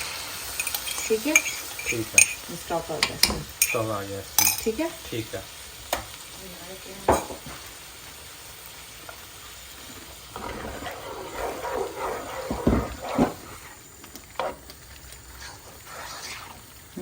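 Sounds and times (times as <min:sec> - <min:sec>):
low sizzle: 0:00.0 - 0:17.0
spoon stirring and scraping pan: 0:00.4 - 0:05.1, 0:09.8 - 0:16.8
spoon knocking against pan: 0:03.0 - 0:03.8, 0:07.1 - 0:07.5.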